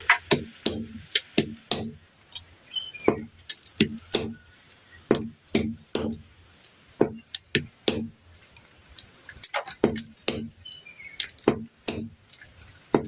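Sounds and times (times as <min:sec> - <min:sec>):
knife chopping olives: 0:00.1 - 0:02.0, 0:03.0 - 0:04.5, 0:05.1 - 0:06.3, 0:07.0 - 0:08.2, 0:09.5 - 0:10.6, 0:11.2 - 0:12.2.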